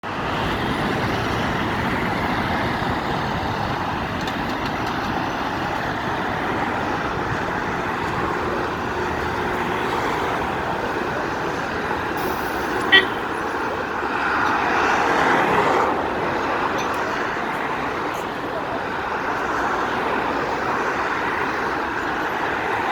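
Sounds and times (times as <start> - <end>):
road traffic: 0.0 - 22.9.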